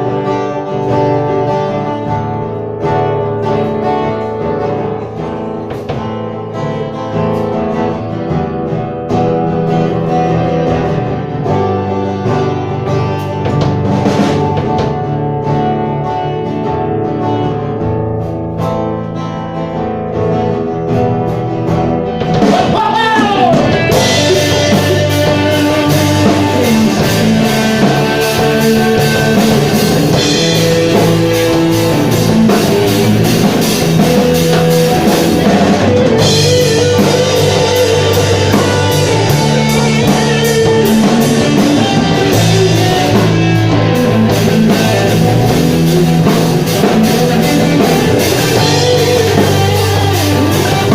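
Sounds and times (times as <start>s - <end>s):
drum kit: 0.0s - 50.9s
electric guitar: 0.0s - 50.9s
person singing: 22.3s - 33.2s, 34.5s - 50.9s.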